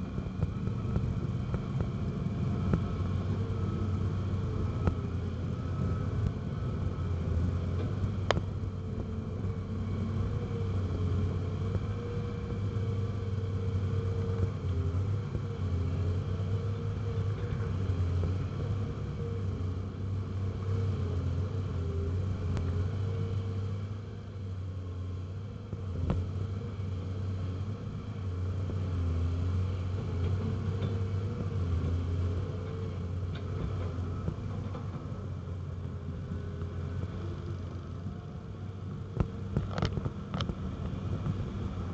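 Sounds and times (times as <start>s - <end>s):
wavering whine: 0.0s - 24.2s
excavator diesel engine running: 0.0s - 41.9s.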